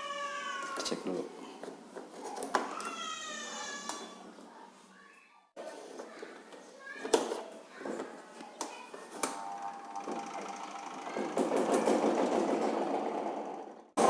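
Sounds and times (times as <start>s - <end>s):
spin dryer knocks and clicks: 9.3s - 14.0s
spin dryer motor rattling: 9.3s - 14.0s.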